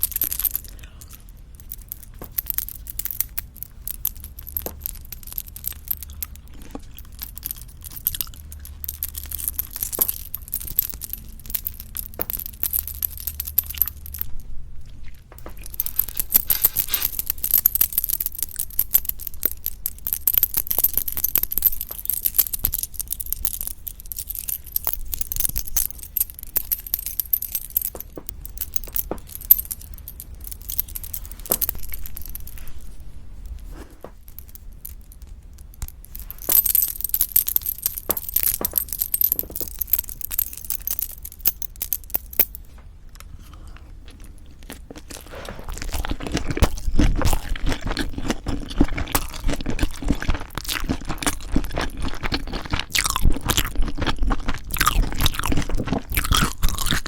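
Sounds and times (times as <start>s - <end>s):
crisp crunching chewing: 43.5s - 57.0s.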